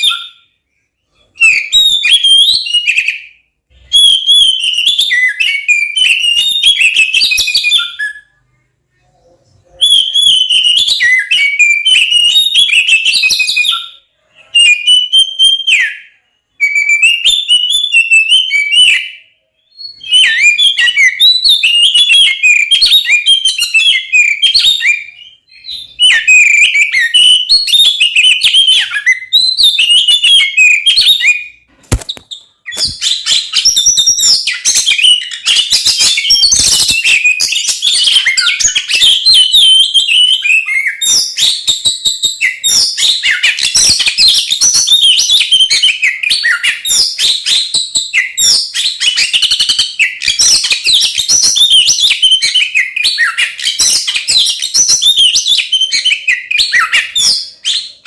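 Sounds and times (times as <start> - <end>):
bird singing whistles and chatter: 9.2 - 58.0
sharp click: 31.8 - 33.0.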